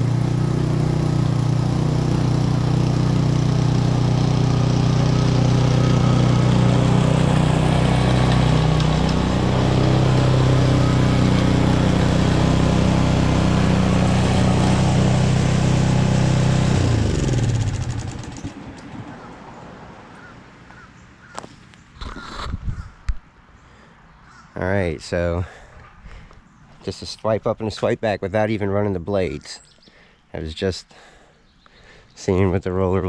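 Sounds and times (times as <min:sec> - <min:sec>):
lawn mower engine running: 0:00.0 - 0:19.8.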